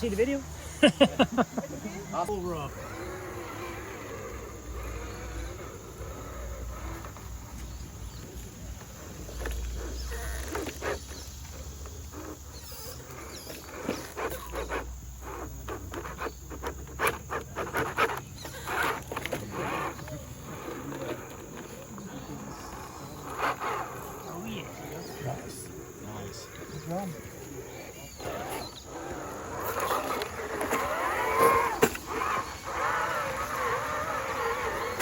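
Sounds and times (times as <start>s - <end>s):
insects chirring: 0.0s - 35.0s.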